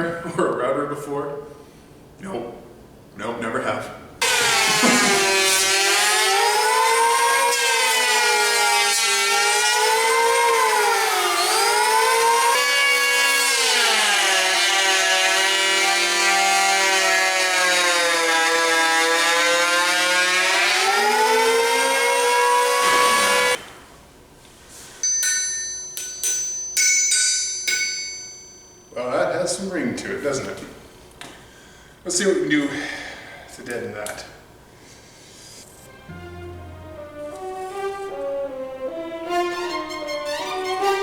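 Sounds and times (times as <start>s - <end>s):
power tool motor whine: 4.2s - 23.6s
steel anvil ringing: 25.0s - 29.4s.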